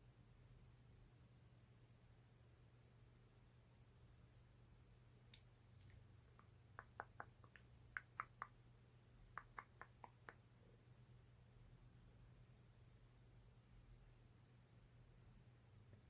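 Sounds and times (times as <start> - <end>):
faint steady hum: 0.0 - 16.0
small sharp clicks and taps: 5.3 - 8.6.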